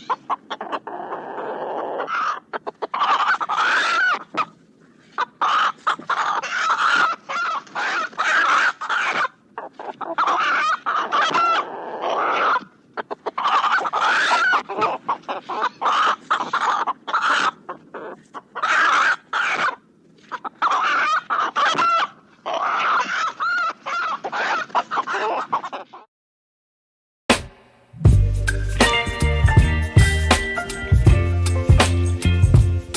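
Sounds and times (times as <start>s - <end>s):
chickens clucking and cackling: 0.0s - 26.1s.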